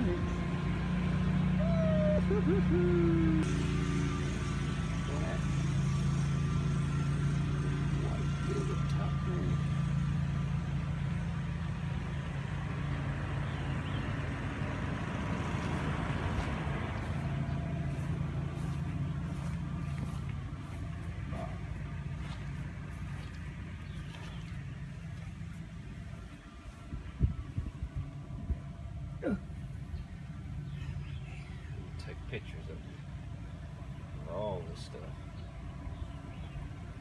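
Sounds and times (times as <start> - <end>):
low engine hum: 0.0 - 37.0.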